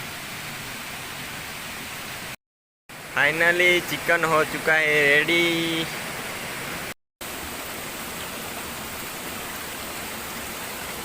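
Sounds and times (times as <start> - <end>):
steady rushing hiss: 0.0 - 8.0.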